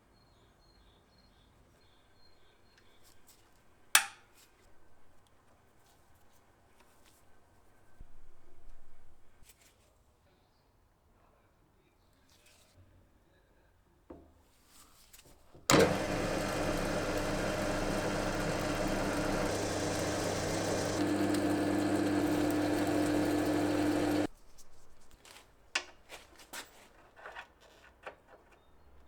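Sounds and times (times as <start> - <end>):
power tool humming: 15.7 - 24.3.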